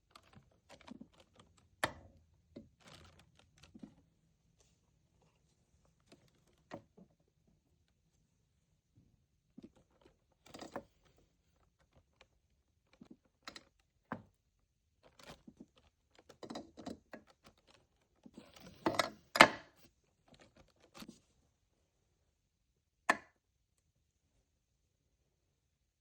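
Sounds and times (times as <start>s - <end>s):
objects being handled: 0.0s - 7.4s, 9.5s - 21.3s.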